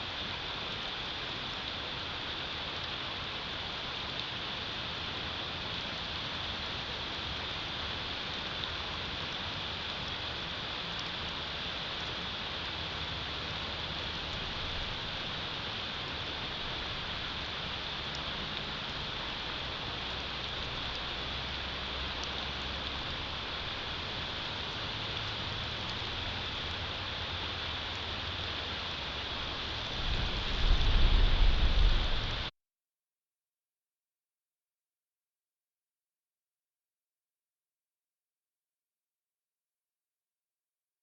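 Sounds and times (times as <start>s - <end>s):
wind and snowstorm hiss: 0.0s - 32.5s
low rumble: 29.7s - 32.5s
wind gust buffeting microphone: 29.9s - 32.5s.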